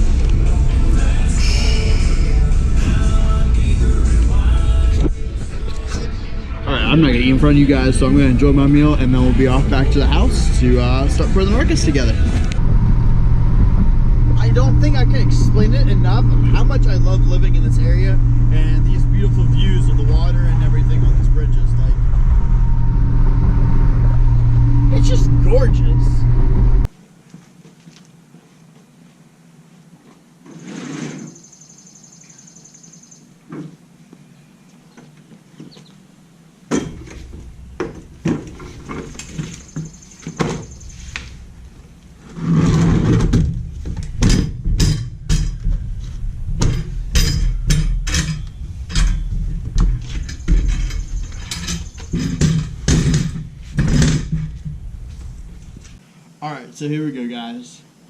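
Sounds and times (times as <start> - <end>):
objects knocking and rustling: 36.7 - 56.0.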